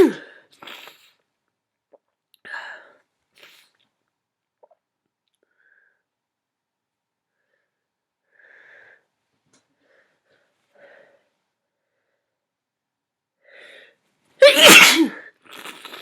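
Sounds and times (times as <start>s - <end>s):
person sneezing: 0.0s - 1.0s, 14.4s - 16.0s.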